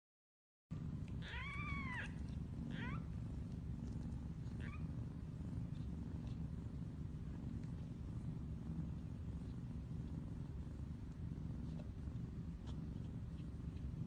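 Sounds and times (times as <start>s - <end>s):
steady low rumble: 0.8s - 14.0s
cat meowing: 1.2s - 3.1s.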